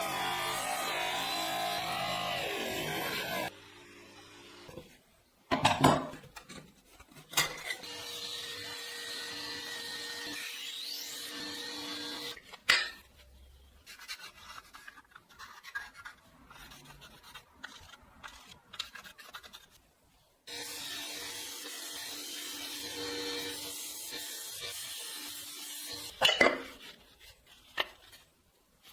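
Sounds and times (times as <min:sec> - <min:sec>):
machine humming and whining: 0:00.0 - 0:03.5
power tool grinding steel: 0:00.0 - 0:04.6, 0:07.8 - 0:12.4, 0:20.5 - 0:26.2.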